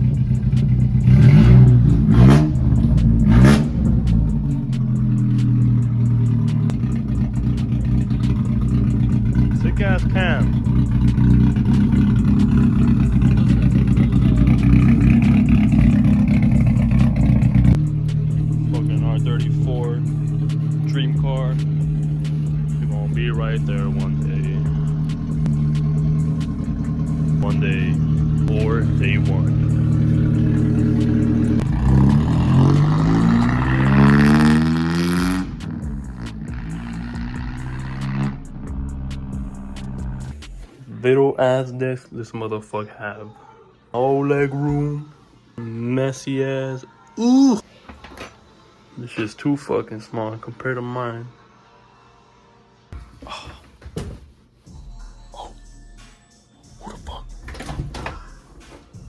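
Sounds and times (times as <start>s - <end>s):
vehicle engine running: 0.0s - 40.7s.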